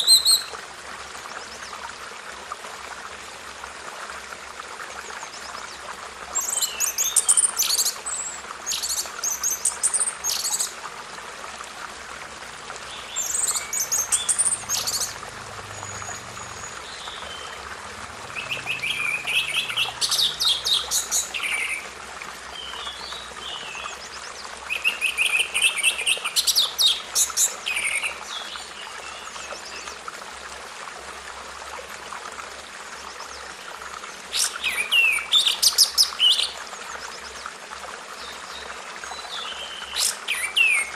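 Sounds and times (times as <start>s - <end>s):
songbirds chirping and trilling: 12.7s - 30.0s.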